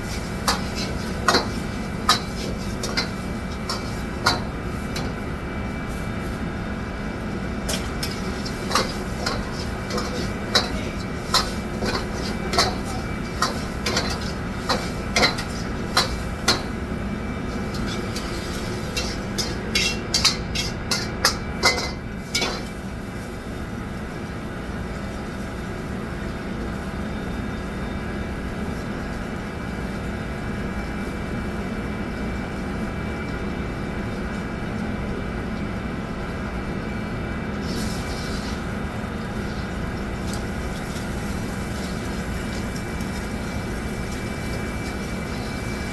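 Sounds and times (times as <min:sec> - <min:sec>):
steady mechanical hum: 0:00.0 - 0:45.9
metal cookware clinking: 0:00.5 - 0:05.1, 0:07.7 - 0:16.7, 0:17.7 - 0:22.8.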